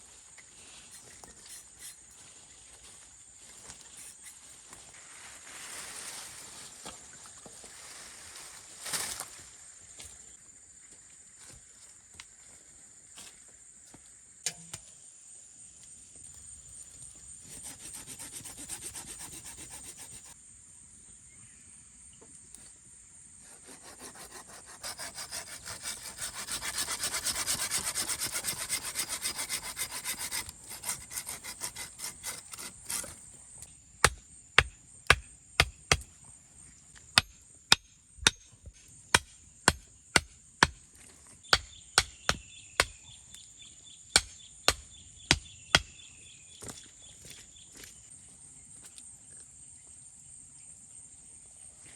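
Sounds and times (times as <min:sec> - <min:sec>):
hand saw cutting wood: 0:17.4 - 0:20.4, 0:23.4 - 0:33.2.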